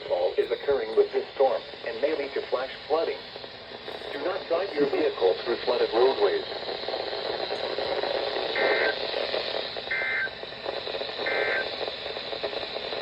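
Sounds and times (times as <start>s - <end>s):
radio hiss: 0.0s - 13.0s
digital data bursts: 11.2s - 11.8s.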